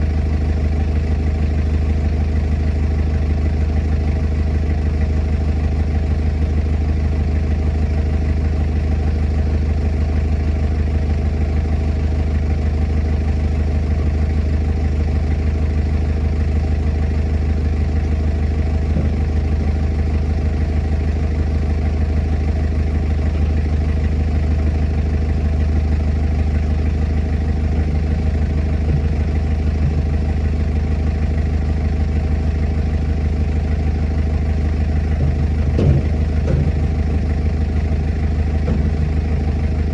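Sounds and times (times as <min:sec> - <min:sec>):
heavy diesel engine idling: 0:00.0 - 0:39.9.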